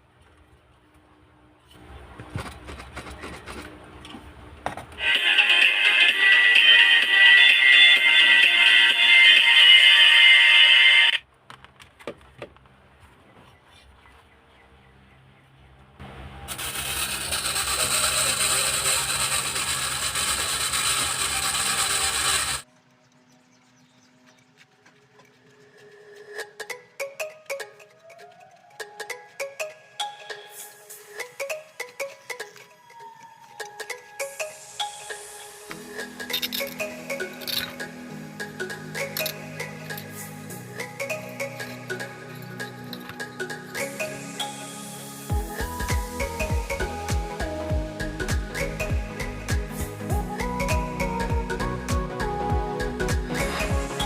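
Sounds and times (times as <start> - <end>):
background music: 5.0 - 11.2, 25.7 - 54.0
loud scraping: 16.5 - 22.6
low hum: 41.7 - 54.0.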